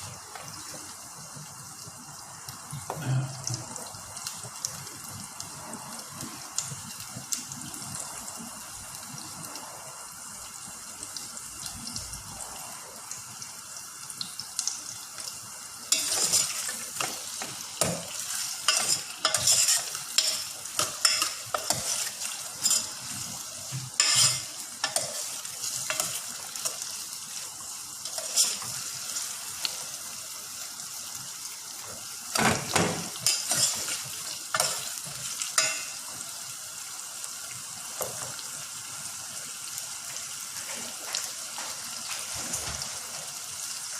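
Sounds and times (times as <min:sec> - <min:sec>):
food sizzling in a pan: 0:00.0 - 0:43.9
utensil scraping and knocking pan: 0:18.7 - 0:20.4, 0:24.0 - 0:25.1.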